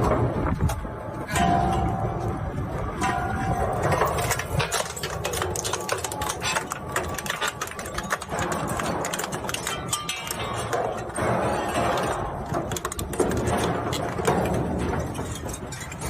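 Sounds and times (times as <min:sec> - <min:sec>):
plastic shredder rumbling: 0:03.9 - 0:16.0.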